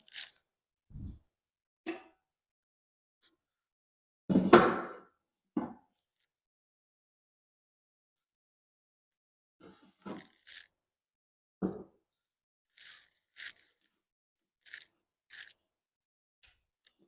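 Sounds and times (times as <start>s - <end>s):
hose reels scraping on wood: 0.0s - 1.2s, 9.6s - 10.7s, 12.7s - 13.9s, 14.6s - 15.6s.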